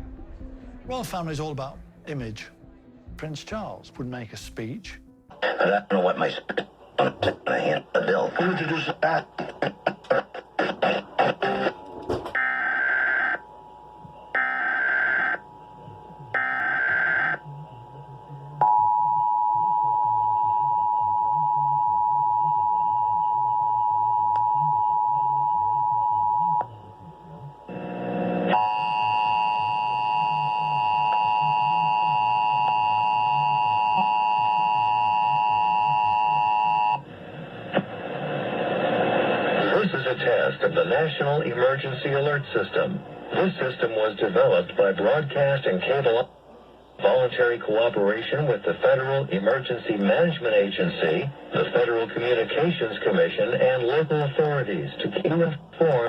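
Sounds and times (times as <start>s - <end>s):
harsh multi-pitch tone: 27.6s - 37.1s.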